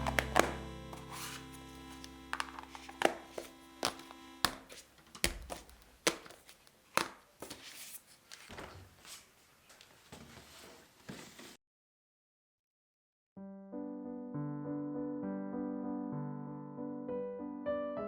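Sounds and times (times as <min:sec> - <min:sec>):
soft handling noises: 0:04.7 - 0:11.6.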